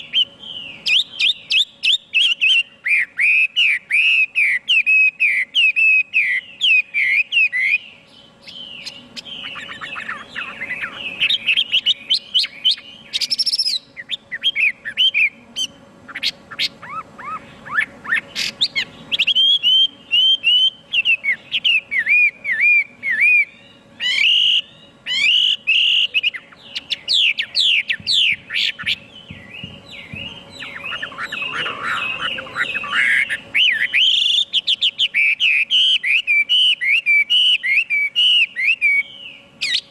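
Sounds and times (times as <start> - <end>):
bird singing whistled phrases: 0.0 - 39.9.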